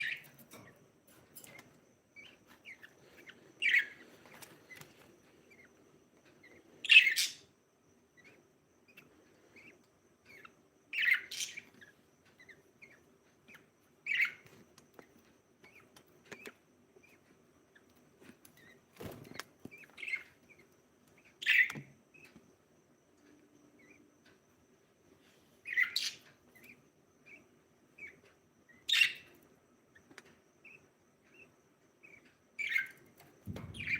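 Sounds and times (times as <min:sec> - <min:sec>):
budgie chirping: 0:00.0 - 0:00.7, 0:02.1 - 0:05.8, 0:06.4 - 0:07.5, 0:08.1 - 0:14.4, 0:25.6 - 0:33.9.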